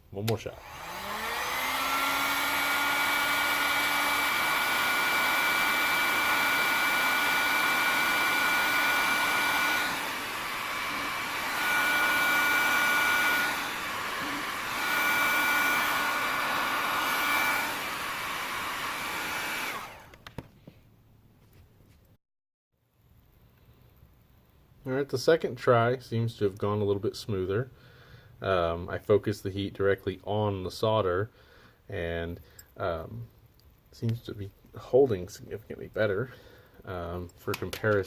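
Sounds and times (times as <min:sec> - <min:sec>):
heat gun blowing with motor whine: 0:00.4 - 0:20.5.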